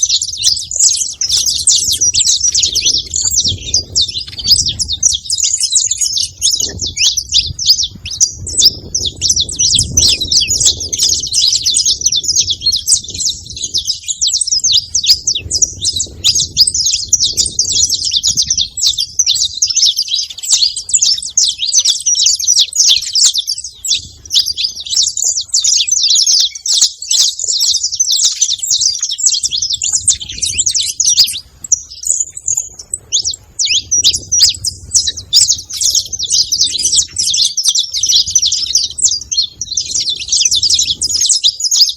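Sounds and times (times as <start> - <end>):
finch singing rapid trills: 0.0 - 41.9.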